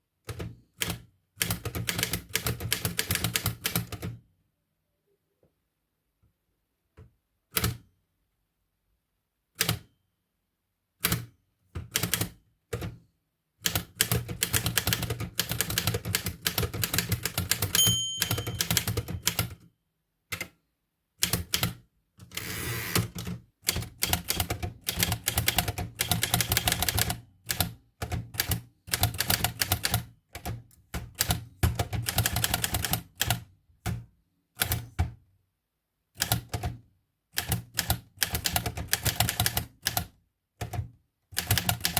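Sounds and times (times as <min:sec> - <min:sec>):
typewriter keys clacking: 0:14.4 - 0:19.5, 0:22.3 - 0:27.7
typewriter margin bell: 0:17.7 - 0:19.5.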